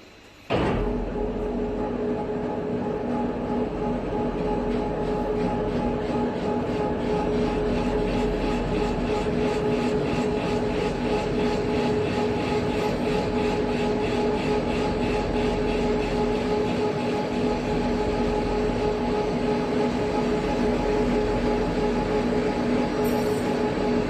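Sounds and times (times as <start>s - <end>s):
constant machine whine: 0.0s - 24.0s
milling machine running: 0.5s - 24.0s.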